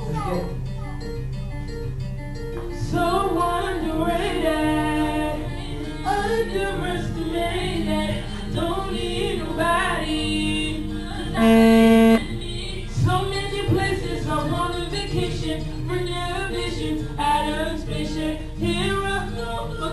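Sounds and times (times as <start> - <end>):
loud held note: 11.4 - 12.2
person singing r and b: 11.4 - 12.2.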